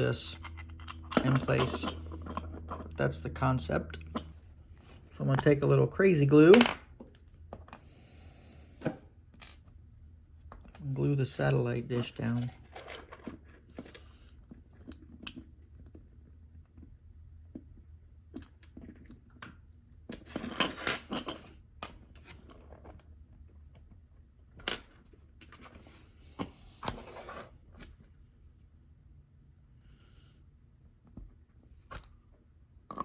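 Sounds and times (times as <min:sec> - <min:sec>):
steady low hum: 0:00.0 - 0:15.7.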